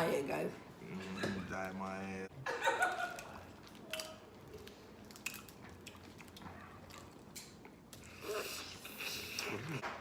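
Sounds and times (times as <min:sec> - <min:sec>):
sucking and slurping: 0:03.6 - 0:09.8.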